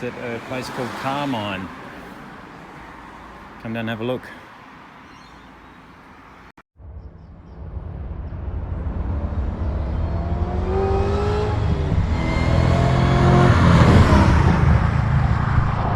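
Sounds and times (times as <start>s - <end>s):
car engine accelerating: 7.5s - 15.9s.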